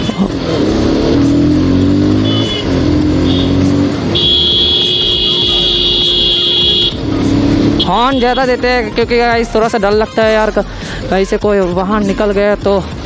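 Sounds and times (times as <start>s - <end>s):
engine running: 0.0s - 11.4s
traffic noise: 0.0s - 13.0s
motorcycle horn: 1.9s - 8.8s.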